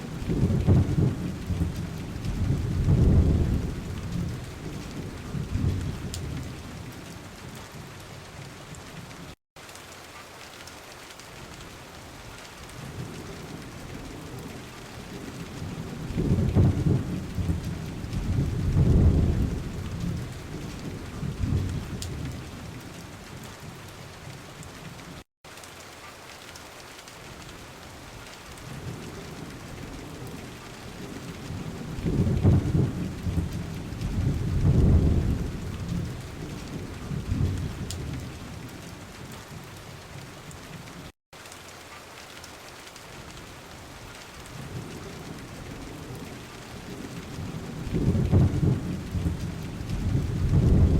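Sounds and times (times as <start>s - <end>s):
low rolling thunder: 0.0s - 7.1s, 12.7s - 23.0s, 28.6s - 38.9s, 44.4s - 50.9s
steady rainfall: 0.0s - 50.9s.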